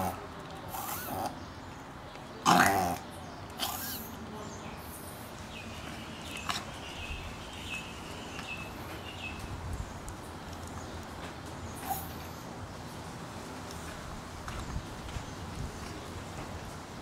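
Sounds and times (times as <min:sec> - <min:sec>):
dog reverse sneezing: 0:03.6 - 0:04.2.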